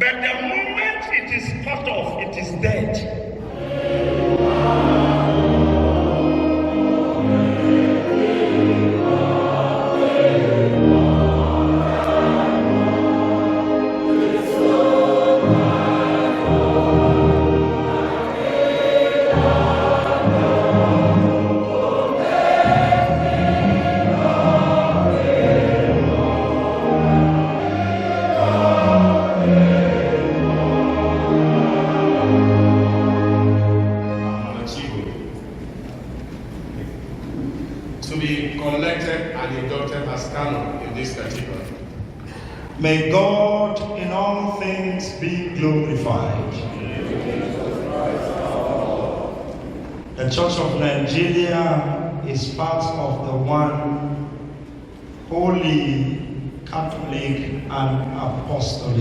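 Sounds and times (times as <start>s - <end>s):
low instrumental accompaniment: 1.4s - 42.2s, 43.0s - 59.0s
choir singing in harmony: 3.3s - 35.0s, 45.9s - 52.2s.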